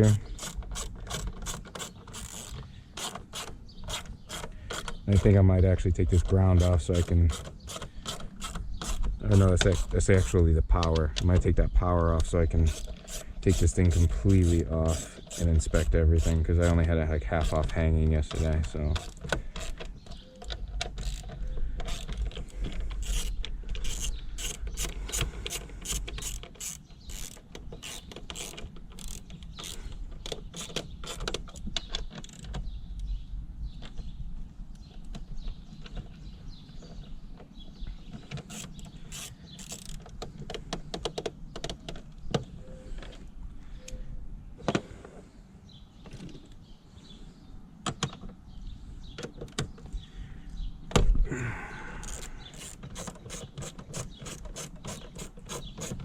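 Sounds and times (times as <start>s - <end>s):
ratchet wrench clicking: 0.3s - 5.0s, 12.7s - 15.4s, 23.0s - 29.8s, 38.5s - 40.0s, 52.0s - 56.0s.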